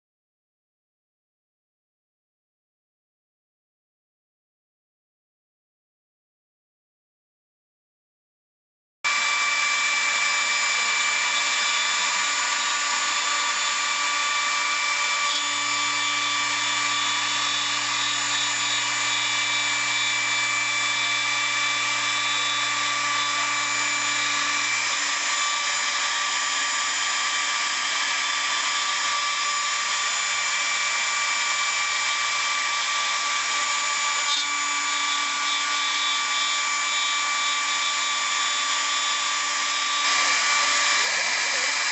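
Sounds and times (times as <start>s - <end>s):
cnc router spindle whine: 9.1s - 41.9s.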